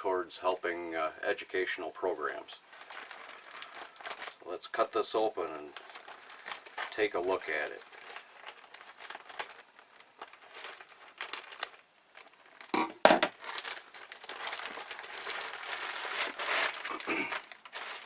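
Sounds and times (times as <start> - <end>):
packaging crinkling and rustling: 2.2 - 18.0
handling knocks: 12.8 - 13.4.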